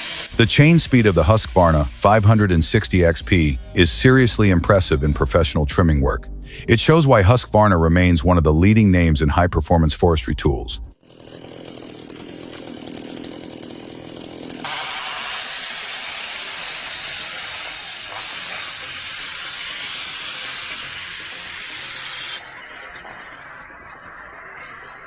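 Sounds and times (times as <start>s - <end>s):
chainsaw running: 0.0s - 4.5s, 10.9s - 25.0s.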